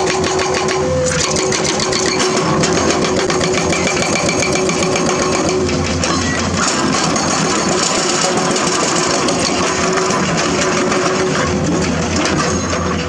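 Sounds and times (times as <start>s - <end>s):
excavator diesel engine clattering: 0.0s - 13.0s.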